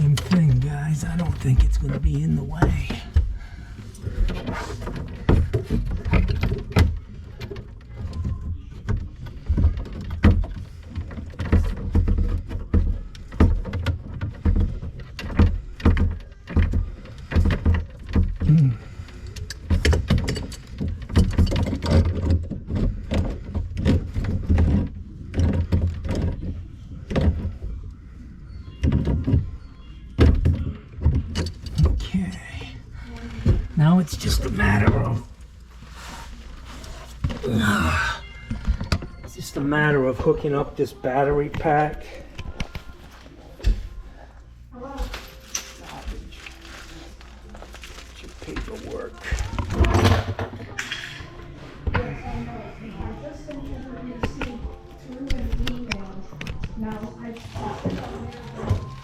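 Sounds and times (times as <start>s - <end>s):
hoses and fittings clattering: 0.0s - 29.6s.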